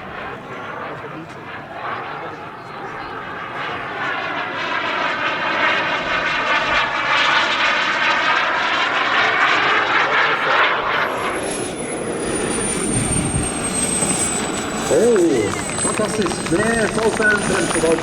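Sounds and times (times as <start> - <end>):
model jet engine rushing past: 0.0 - 18.0
high turbine whine: 4.8 - 18.0.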